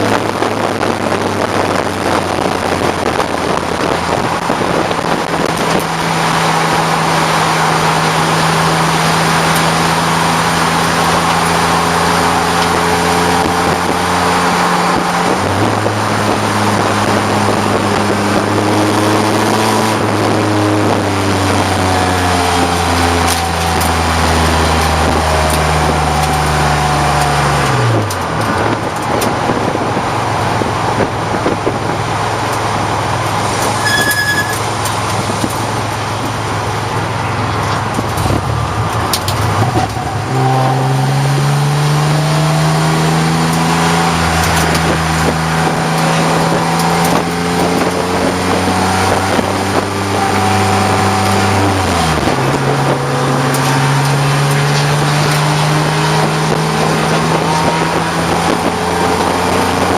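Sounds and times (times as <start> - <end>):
noisy rush: 0.0 - 59.9
race car engine running hard: 0.0 - 59.9
brief high beep: 33.8 - 34.6.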